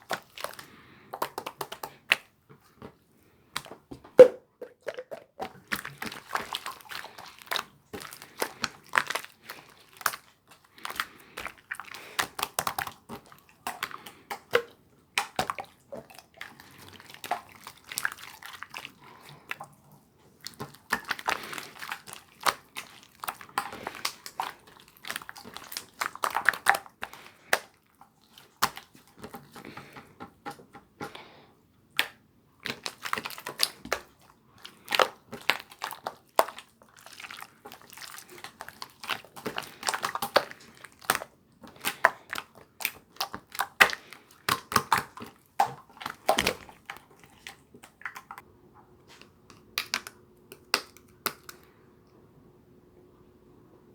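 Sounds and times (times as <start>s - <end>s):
crinkling and clicking handling noises: 0.0s - 31.3s.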